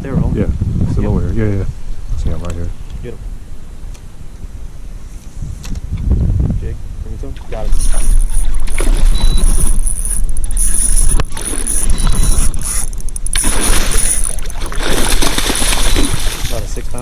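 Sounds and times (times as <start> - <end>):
wind buffeting microphone: 0.0 - 17.0
thin high whine: 7.6 - 17.0.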